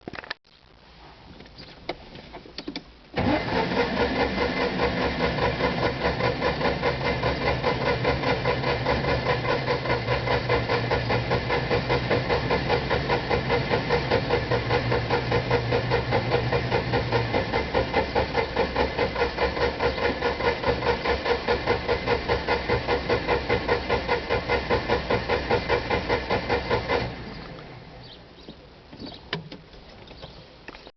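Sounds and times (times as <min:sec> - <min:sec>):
engine cranking on starter: 0:03.2 - 0:27.9.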